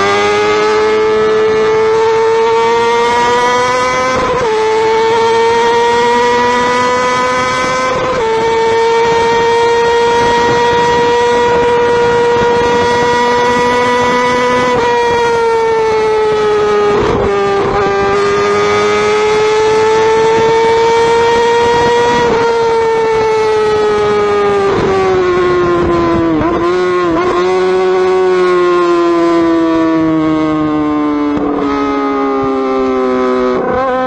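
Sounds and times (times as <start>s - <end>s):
motorcycle engine revving high: 0.0s - 34.0s.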